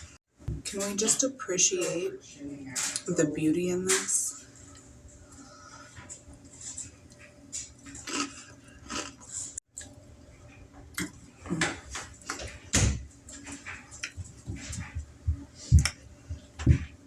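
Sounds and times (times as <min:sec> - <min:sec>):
cereal crisps crunching: 0:08.0 - 0:09.3.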